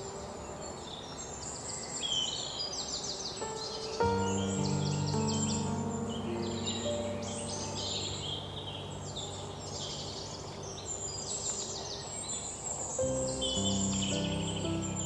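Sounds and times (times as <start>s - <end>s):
birds singing: 0.0s - 15.0s
soft instrumental music: 3.4s - 10.8s, 13.0s - 15.0s.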